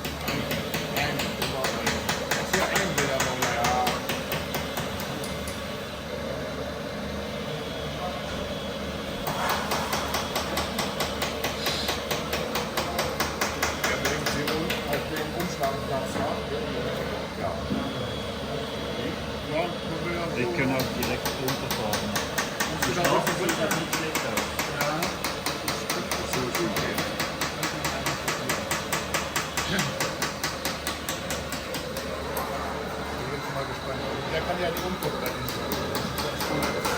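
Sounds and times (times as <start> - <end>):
hydraulic breaker hammer knocking: 0.0 - 5.6, 9.2 - 16.3, 20.6 - 32.5, 34.6 - 36.9
small electric motors humming: 0.0 - 36.9.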